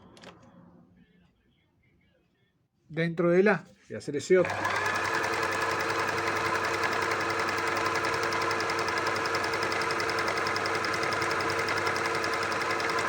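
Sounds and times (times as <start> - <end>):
sewing machine running: 4.4 - 13.0.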